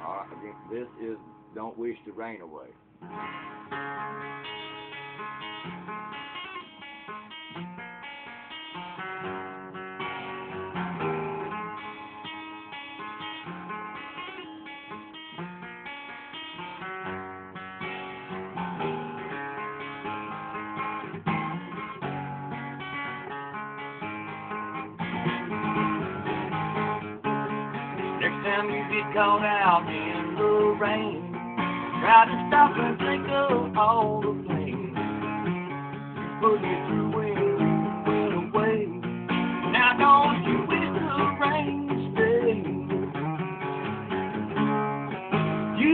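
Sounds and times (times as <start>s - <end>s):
acoustic guitar strumming: 0.0s - 45.9s.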